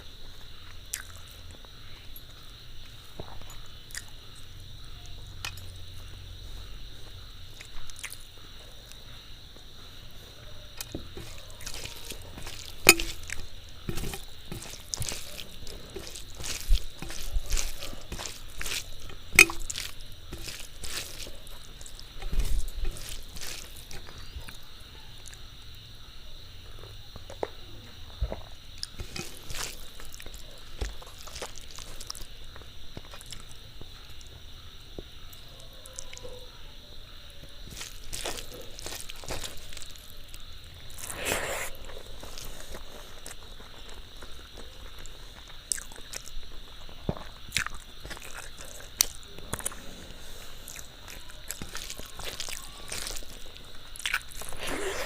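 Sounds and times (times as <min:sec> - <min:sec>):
person chewing: 0:00.6 - 0:01.4, 0:03.9 - 0:04.1, 0:07.6 - 0:09.0, 0:10.8 - 0:24.6, 0:28.8 - 0:32.3, 0:37.6 - 0:46.4, 0:47.1 - 0:55.0
rustling smear: 0:11.0 - 0:24.3, 0:29.0 - 0:30.2.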